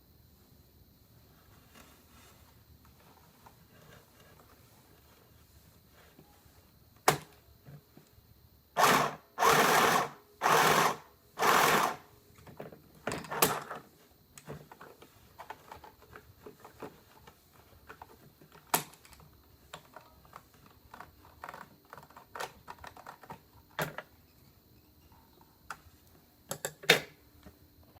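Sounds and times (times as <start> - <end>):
sewing machine running: 8.8 - 12.1
clicks and knocks of handling: 12.3 - 24.2, 25.1 - 27.6.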